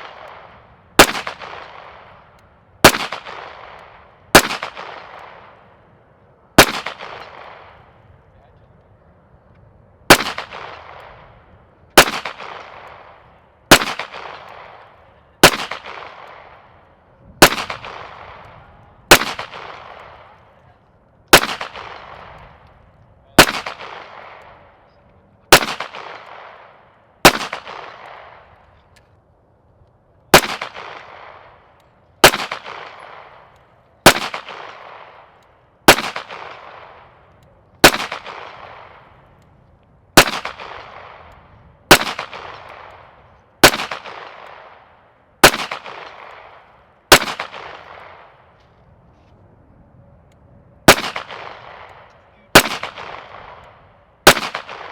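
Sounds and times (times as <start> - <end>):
handgun shots with echo: 6.6 - 7.6, 23.4 - 24.5, 45.4 - 48.3, 50.9 - 53.6, 54.2 - 54.9.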